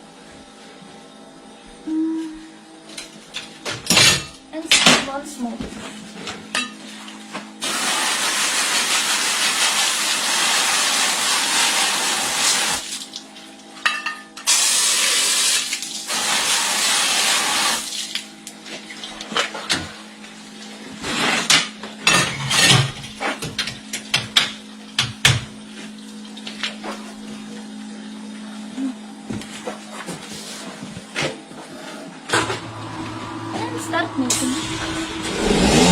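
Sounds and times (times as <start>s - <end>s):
water spraying: 7.6s - 13.0s
steady machine hum: 31.5s - 35.9s.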